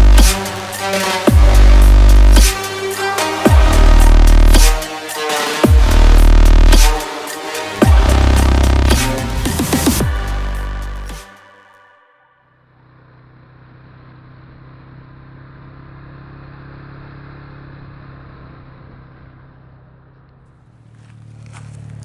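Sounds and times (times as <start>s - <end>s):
atv engine running: 12.7s - 22.0s.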